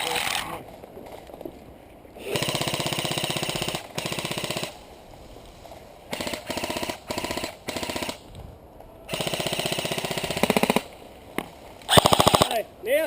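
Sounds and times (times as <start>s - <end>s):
airsoft gun firing bursts: 2.2s - 4.8s, 6.1s - 8.2s, 9.1s - 10.9s, 11.9s - 12.6s.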